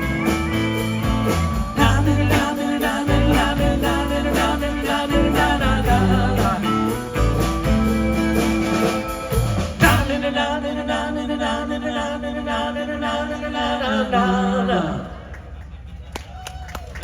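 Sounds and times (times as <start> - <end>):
guitar: 0.0 - 10.2
drums: 0.0 - 10.4
person singing: 1.3 - 7.2.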